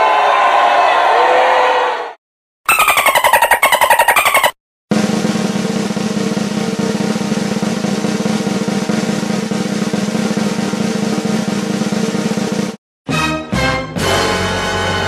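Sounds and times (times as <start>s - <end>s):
snare drum roll: 4.9s - 12.8s.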